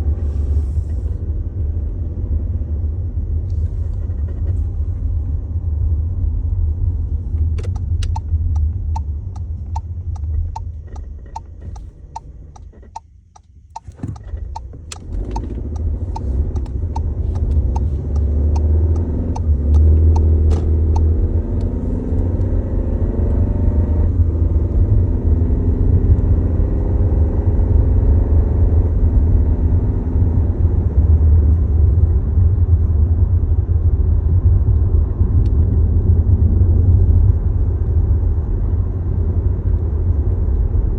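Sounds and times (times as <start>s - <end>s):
low engine rumble: 0.0s - 40.9s
regular ticking: 7.4s - 21.7s.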